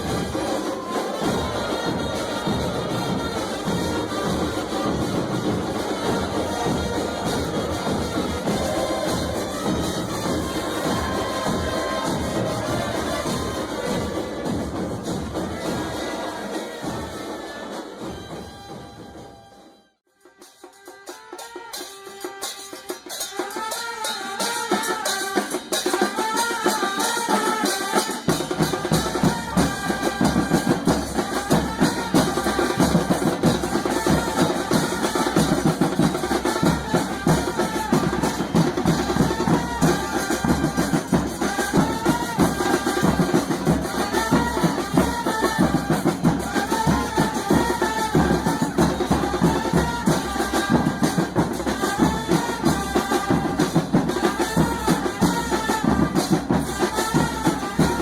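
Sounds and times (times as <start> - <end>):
deep drum beat: 0.0 - 17.2.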